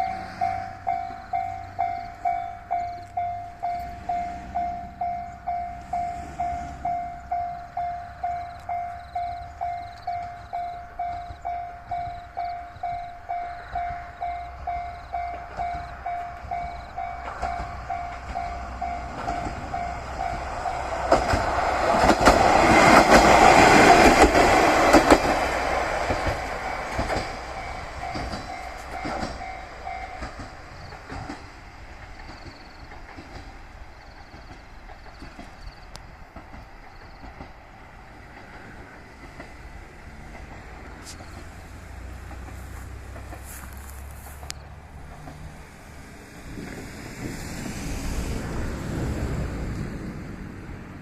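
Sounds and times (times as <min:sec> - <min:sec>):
level-crossing bell ringing: 0:00.0 - 0:20.9, 0:26.4 - 0:30.4
train wheels clacking: 0:00.0 - 0:48.4.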